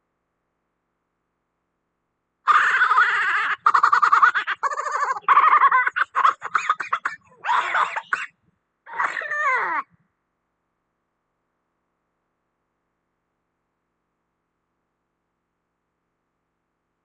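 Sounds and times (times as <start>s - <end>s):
animal warbling calls: 2.5s - 6.5s.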